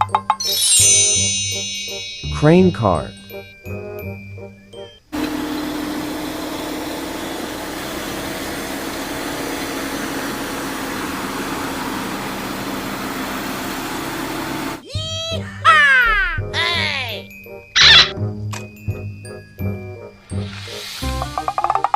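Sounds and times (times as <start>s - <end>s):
truck engine running: 5.1s - 14.8s.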